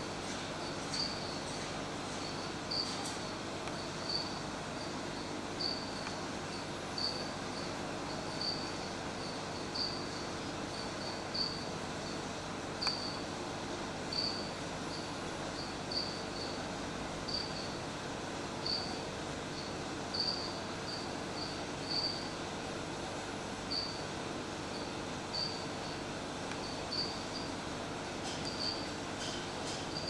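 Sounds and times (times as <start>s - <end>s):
cricket chirping: 0.6s - 1.4s, 2.2s - 13.3s, 14.1s - 16.7s, 17.3s - 17.9s, 18.6s - 22.4s, 23.7s - 24.1s, 24.7s - 27.6s, 28.2s - 30.0s.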